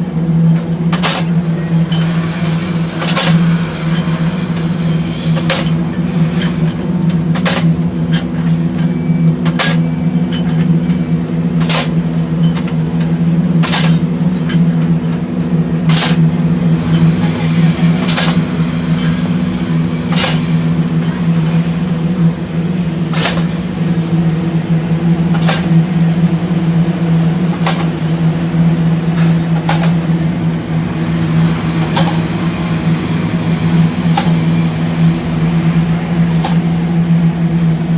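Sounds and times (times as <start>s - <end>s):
heavy machine droning: 0.0s - 37.9s
sharp clank: 16.8s - 21.2s, 23.1s - 23.7s.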